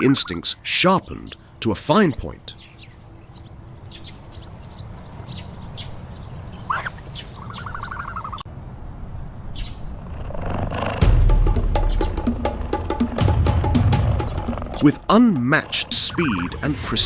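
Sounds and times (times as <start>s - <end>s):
wild birds chirping and calling: 0.0s - 8.5s, 9.5s - 16.8s
drum-heavy music: 11.0s - 17.0s.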